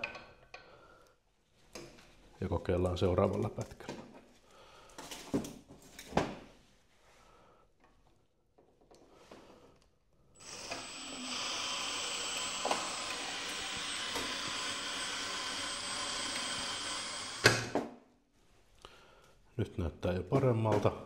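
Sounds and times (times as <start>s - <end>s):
electric drill motor whining: 10.4s - 17.8s.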